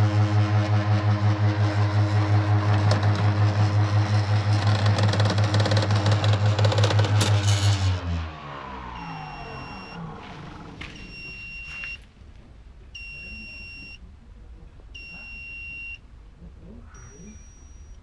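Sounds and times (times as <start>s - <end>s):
lawn mower motor winding down: 0.0s - 11.4s
electronic beeps: 8.9s - 10.1s, 10.8s - 12.0s, 13.0s - 14.0s, 15.0s - 16.0s, 16.9s - 18.0s.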